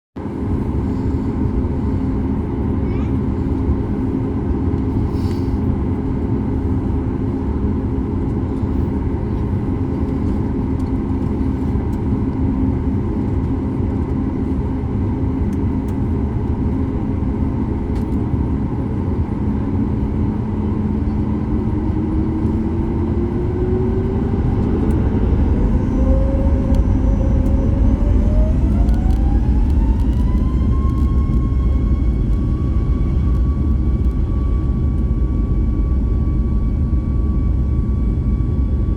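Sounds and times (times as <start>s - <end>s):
jet engines spooling up: 19.9s - 38.9s.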